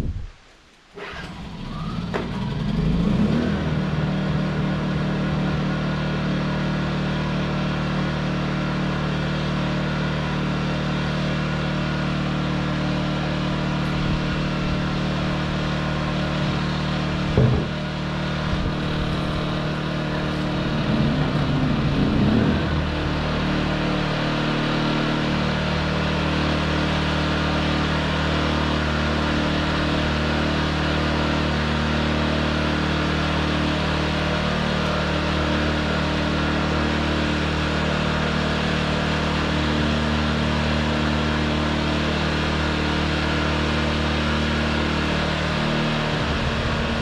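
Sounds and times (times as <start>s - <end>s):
generators running steadily: 0.9s - 47.0s
short knock: 17.3s - 17.8s.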